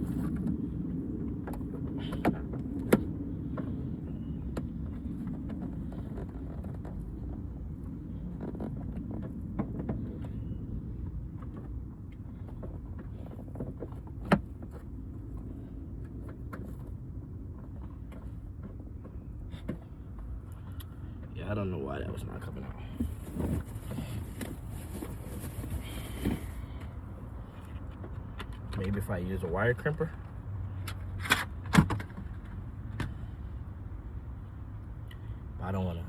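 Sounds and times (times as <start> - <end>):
steady low rumble: 0.0 - 36.0.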